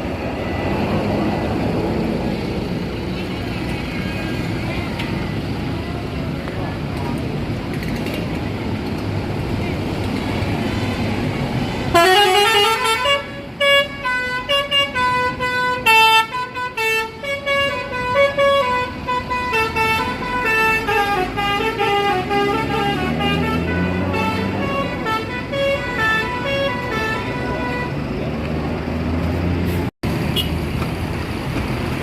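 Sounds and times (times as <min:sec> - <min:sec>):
bus musical air horn: 0:11.9 - 0:28.2
bus engine revving: 0:17.3 - 0:32.0.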